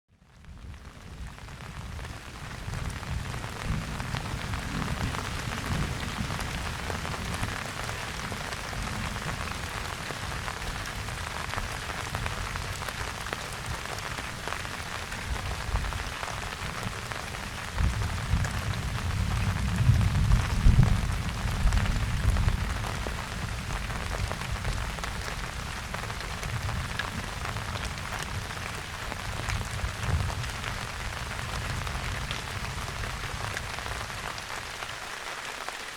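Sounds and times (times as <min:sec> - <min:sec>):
steady rain falling: 0:00.1 - 0:35.9
distant thunder rumble: 0:03.0 - 0:11.4, 0:17.0 - 0:34.0.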